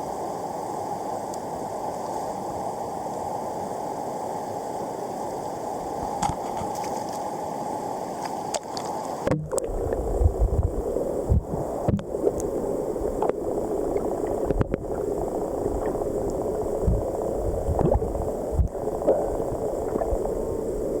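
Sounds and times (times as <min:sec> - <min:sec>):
flowing river rushing: 0:07.4 - 0:21.0
low thumps: 0:09.3 - 0:12.1, 0:16.8 - 0:20.2.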